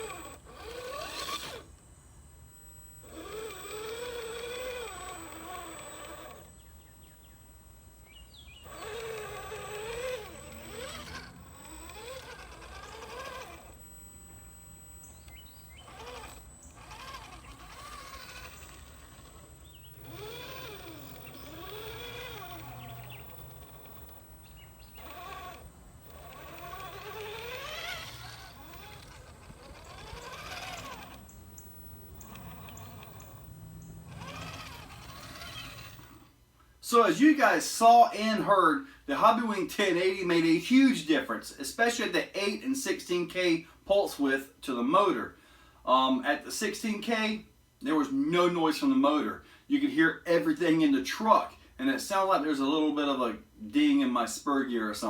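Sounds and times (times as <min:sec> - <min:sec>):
electric motor whine: 0:00.0 - 0:36.4.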